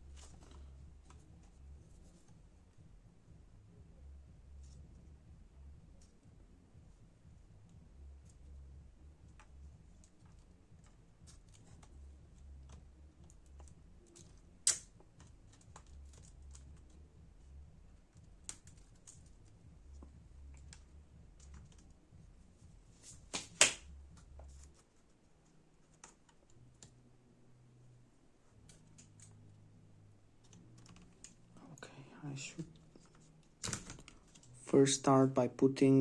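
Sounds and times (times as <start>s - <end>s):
laptop parts clicking and tapping: 9.2s - 17.0s, 18.1s - 22.0s, 32.8s - 34.5s.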